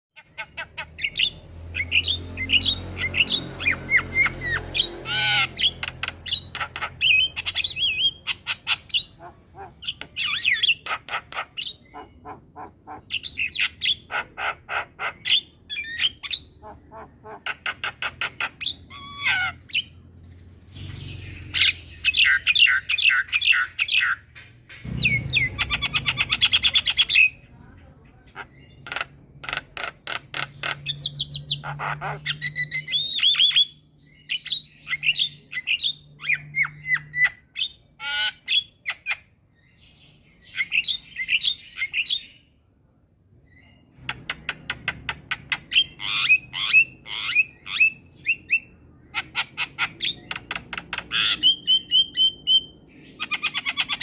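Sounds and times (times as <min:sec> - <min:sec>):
bird singing: 0:00.2 - 0:42.6, 0:43.4 - 0:54.0.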